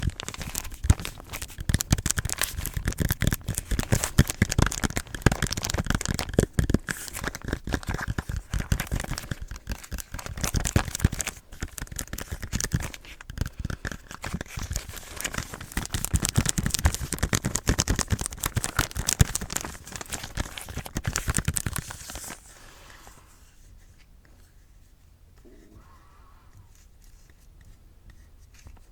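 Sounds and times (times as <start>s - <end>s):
fast clicking taps: 0.4s - 21.8s.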